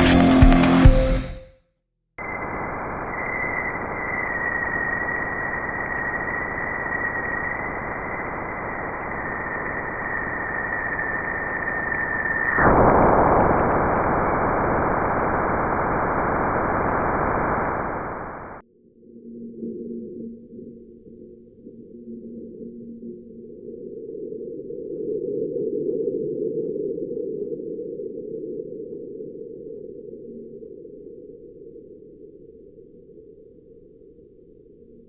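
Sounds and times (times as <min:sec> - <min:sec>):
radio static hiss: 0:02.2 - 0:18.6
thin whistling tone: 0:03.1 - 0:12.6.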